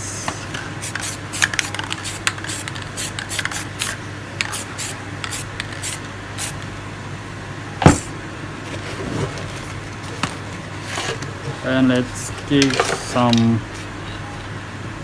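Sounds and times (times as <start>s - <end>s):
spray paint can hissing: 0.8s - 6.6s.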